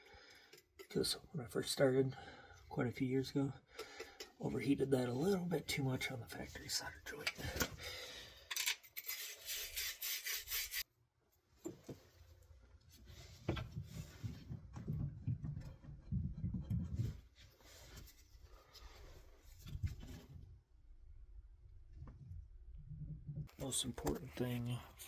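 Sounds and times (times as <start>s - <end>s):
scrubbing copper pipe: 9.0s - 10.8s.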